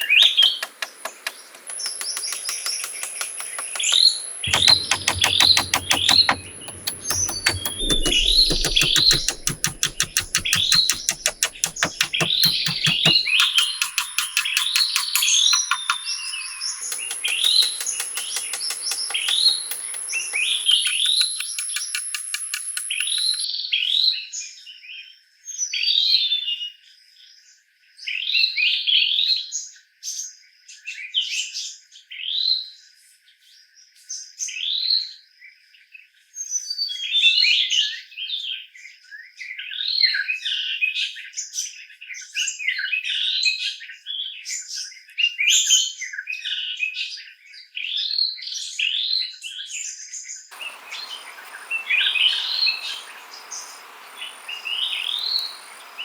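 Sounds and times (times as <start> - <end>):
insects hissing: 0.0 - 23.4, 50.5 - 56.0
songbirds chirping and singing: 50.6 - 56.0.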